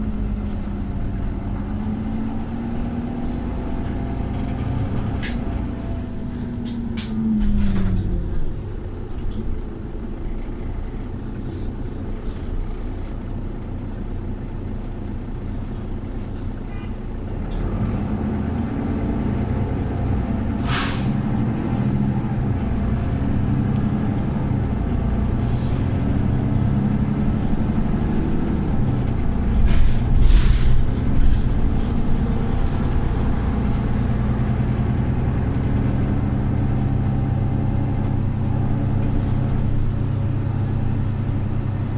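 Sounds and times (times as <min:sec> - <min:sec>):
bus engine running: 0:00.0 - 0:41.9
air brake hisses: 0:10.8 - 0:12.5, 0:20.6 - 0:21.2, 0:25.4 - 0:26.0.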